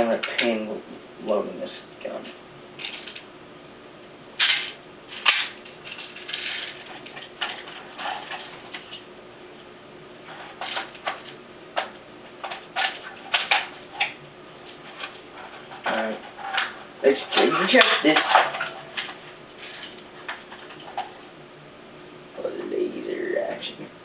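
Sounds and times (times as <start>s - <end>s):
plastic rifle parts clicking and rattling: 2.8s - 3.3s, 4.4s - 9.0s, 10.6s - 14.2s, 14.9s - 21.1s.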